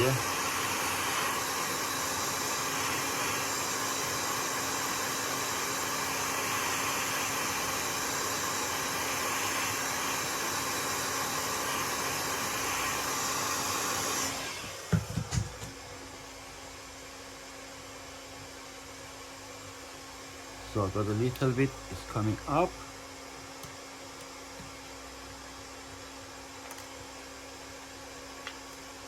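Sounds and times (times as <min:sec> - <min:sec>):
hot air gun blowing: 0:00.0 - 0:15.6.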